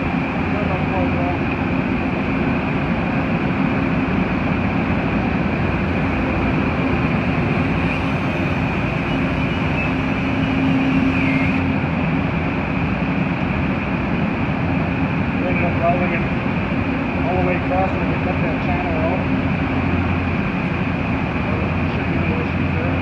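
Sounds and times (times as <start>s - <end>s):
machine running: 7.0s - 11.7s.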